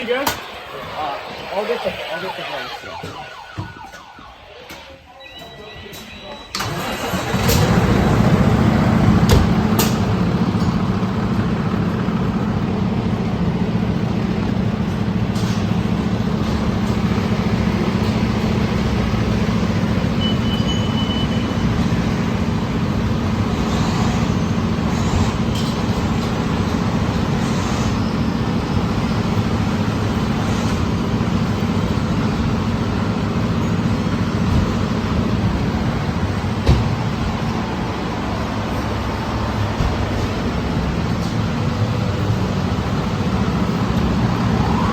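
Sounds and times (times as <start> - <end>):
short high beep: 5.1 - 6.6, 20.2 - 21.6
fire truck engine idling: 6.6 - 44.9.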